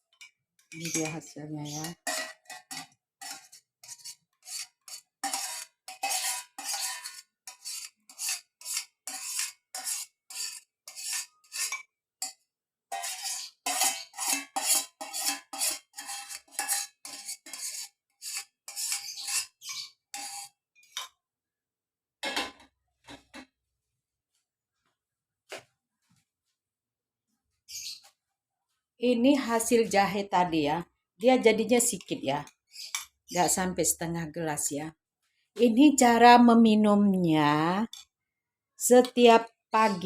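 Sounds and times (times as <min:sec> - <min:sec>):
metal spoon scraping cookware: 0:00.1 - 0:21.2.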